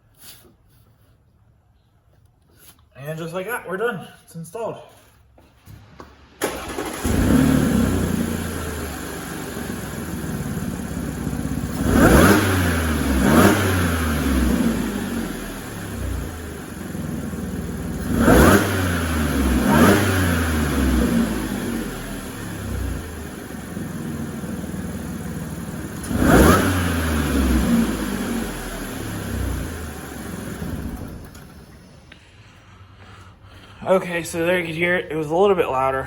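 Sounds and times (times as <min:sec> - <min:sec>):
car engine starting and idling: 0:05.8 - 0:36.0
engine revving: 0:06.4 - 0:32.1.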